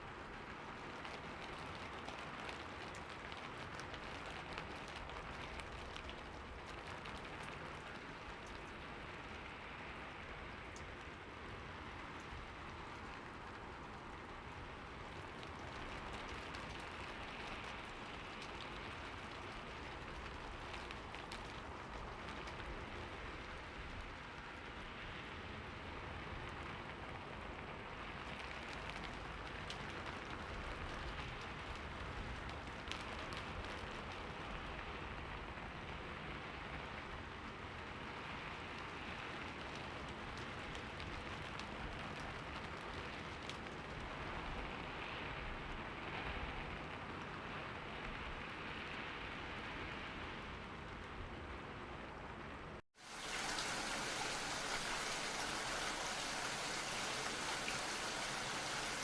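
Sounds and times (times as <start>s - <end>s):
rain hiss: 0.1s - 50.6s, 53.0s - 59.0s
raindrop ticks: 0.2s - 24.8s, 28.0s - 36.1s, 37.9s - 44.7s, 53.0s - 59.0s.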